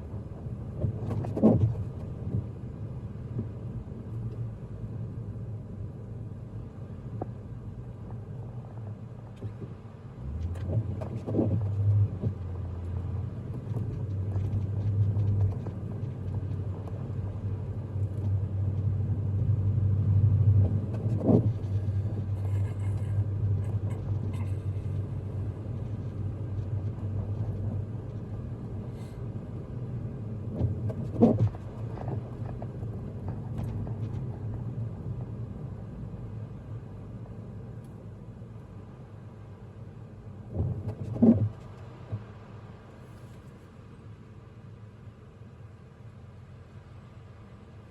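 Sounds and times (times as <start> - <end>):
car road noise inside cabin: 0.0 - 47.9.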